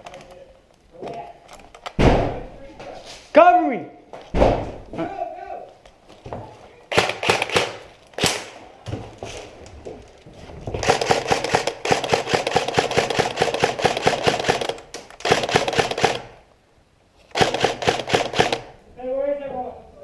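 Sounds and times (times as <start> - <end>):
automatic gunfire bursts: 6.9 - 8.6, 10.8 - 16.4, 17.3 - 18.8.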